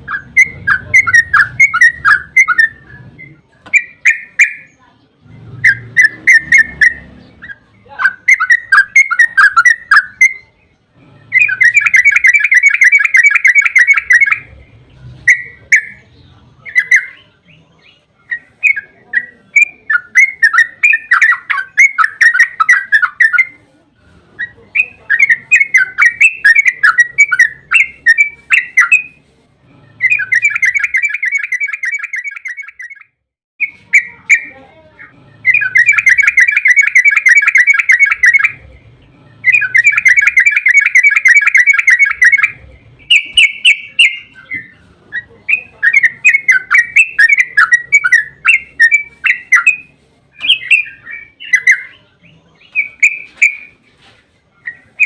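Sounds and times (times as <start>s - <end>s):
bird singing bubbling chirps and trills: 5.6s - 23.6s.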